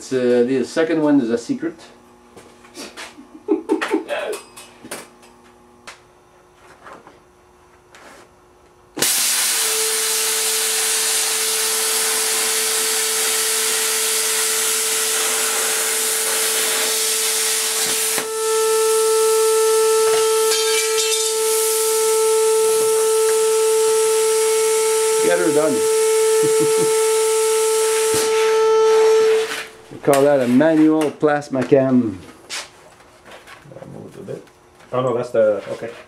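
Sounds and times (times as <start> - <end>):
plasma cutter hissing and whining: 9.0 - 30.5.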